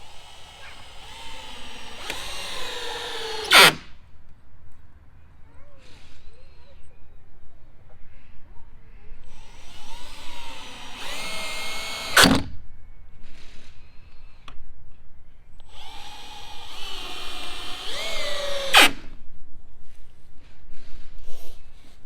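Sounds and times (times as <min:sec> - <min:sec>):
drill stopping clack: 0:00.0 - 0:03.8, 0:09.3 - 0:12.4, 0:15.7 - 0:19.0
power drill motor whine: 0:00.0 - 0:03.9, 0:09.3 - 0:12.5, 0:15.7 - 0:19.1.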